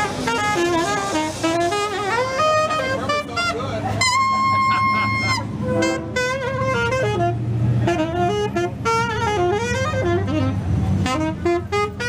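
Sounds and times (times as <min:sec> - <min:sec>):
live blues band playing: 0:00.0 - 0:12.0
saxophone melody: 0:00.0 - 0:12.0
steady low bass: 0:03.9 - 0:09.2.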